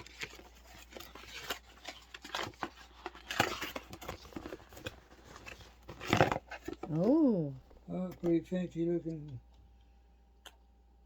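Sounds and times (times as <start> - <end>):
gift packaging being opened: 0.0 - 9.3.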